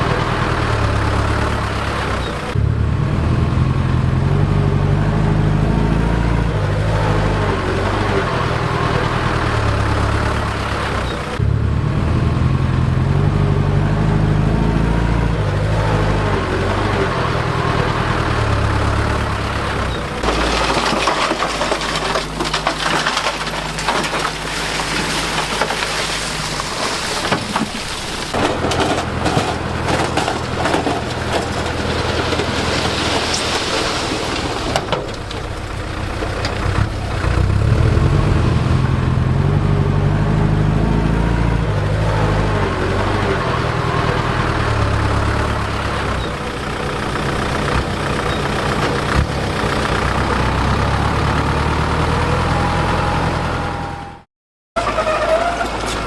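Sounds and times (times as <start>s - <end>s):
diesel engine running under load: 0.0s - 56.0s
crunching and clattering: 19.2s - 37.6s, 54.8s - 56.0s.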